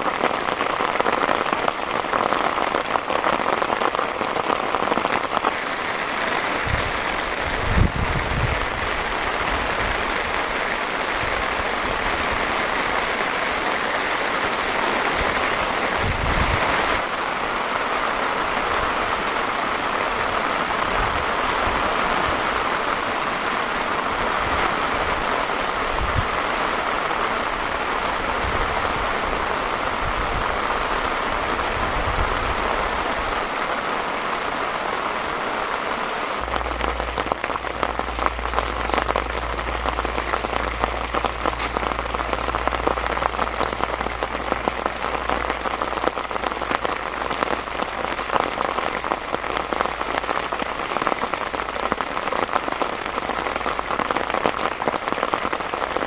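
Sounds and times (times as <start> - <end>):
heavy rain falling: 0.0 - 56.0
raindrops pattering on surface: 0.0 - 56.0
low steady rumble: 36.4 - 50.8.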